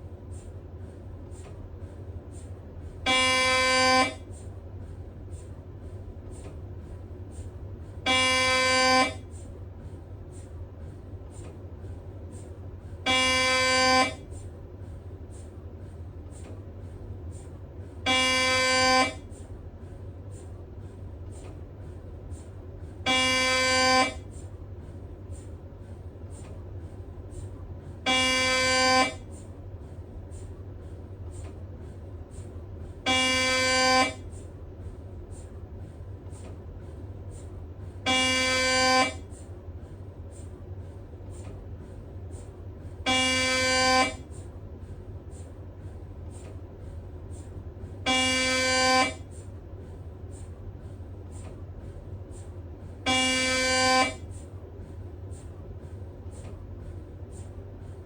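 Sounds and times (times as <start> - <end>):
steady low hum: 0.0 - 58.0
mri scanner loud buzzing tones: 3.0 - 4.4, 8.0 - 9.4, 13.0 - 14.4, 18.0 - 19.4, 23.0 - 24.4, 28.0 - 29.5, 32.4 - 34.5, 38.0 - 39.5, 42.2 - 44.5, 47.0 - 49.7, 51.2 - 54.5
loud scanner buzzing tones: 48.0 - 49.3, 53.0 - 54.3.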